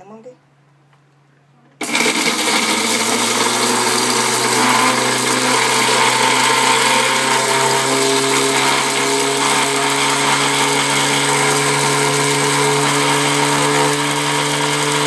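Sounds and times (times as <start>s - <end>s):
kitchen mixer grinder running: 1.8s - 15.0s.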